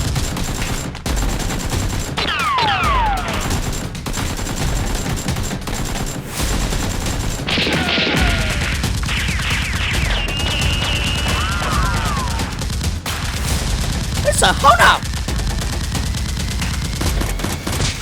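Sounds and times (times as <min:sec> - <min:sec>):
falling whistles: 0:07.8 - 0:12.5.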